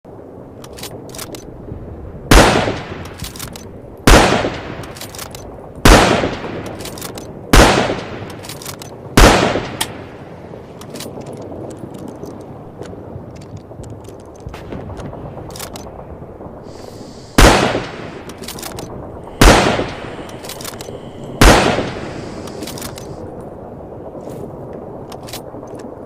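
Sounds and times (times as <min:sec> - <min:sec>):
rifle shots echoing: 0:02.3 - 0:10.2, 0:16.7 - 0:23.2
rifle bolt clicks: 0:03.0 - 0:03.7.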